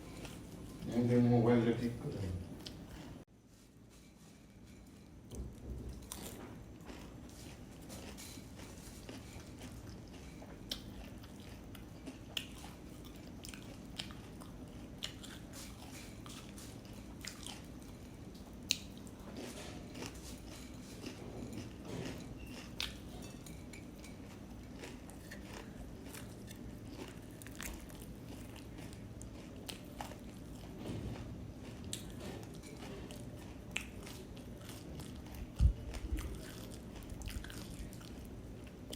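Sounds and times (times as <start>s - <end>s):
faint low hum: 0.0s - 38.9s
person chewing crunchy food: 5.2s - 38.9s.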